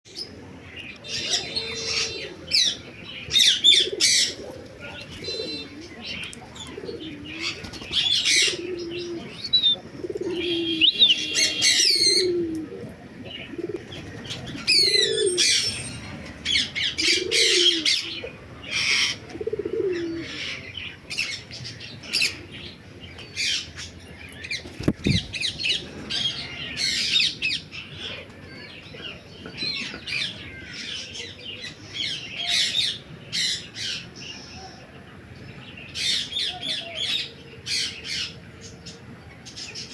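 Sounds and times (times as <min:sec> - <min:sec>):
low bird coos: 0:00.1 - 0:20.9.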